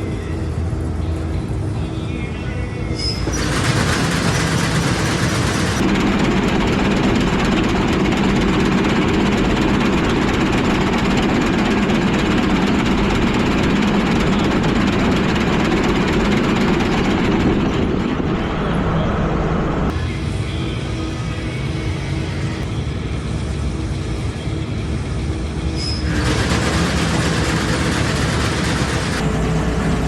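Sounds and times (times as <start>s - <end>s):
combine harvester engine humming: 0.0s - 30.0s.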